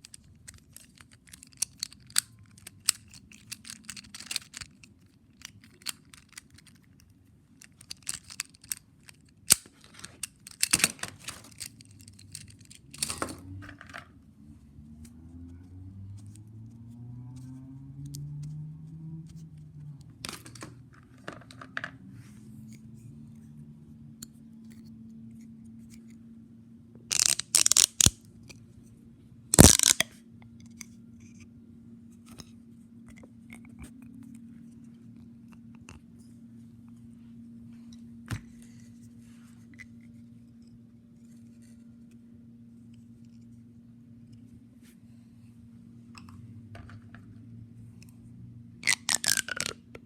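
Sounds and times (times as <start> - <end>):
fidget toys clicking: 0.0 - 6.8, 7.6 - 13.4, 27.1 - 28.2, 29.6 - 30.1, 48.8 - 50.0.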